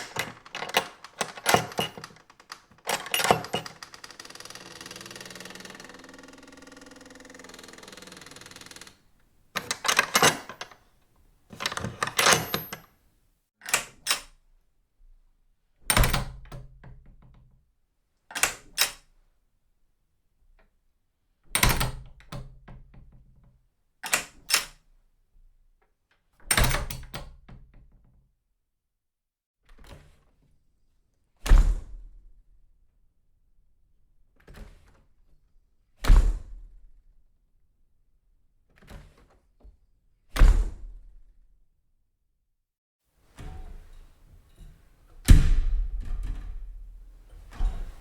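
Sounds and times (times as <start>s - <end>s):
door shutting with thud: 0.0s - 9.0s, 40.4s - 40.9s, 44.6s - 48.0s
metal door latch clacking: 0.0s - 9.0s, 9.6s - 10.8s, 11.6s - 12.8s
door creaking: 0.0s - 10.8s, 11.6s - 12.8s, 43.3s - 48.0s
door thumping against frame: 45.2s - 48.0s.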